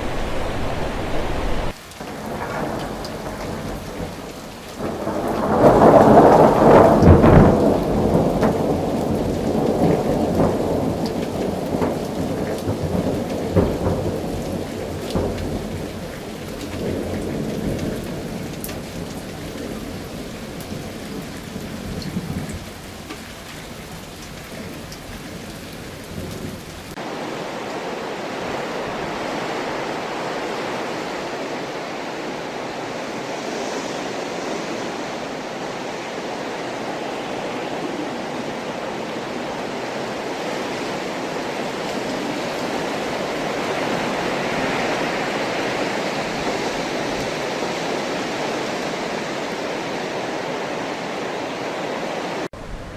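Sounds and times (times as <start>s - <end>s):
steady rushing noise: 0.0s - 1.8s
thunder rumbling: 0.0s - 27.0s, 39.4s - 49.4s, 52.5s - 52.9s
steady rain: 0.0s - 52.9s.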